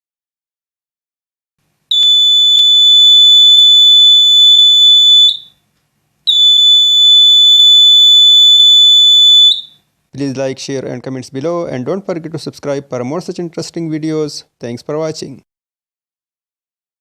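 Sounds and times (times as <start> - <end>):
piezo buzzer high-pitched tone: 1.9 - 5.6, 6.3 - 9.8.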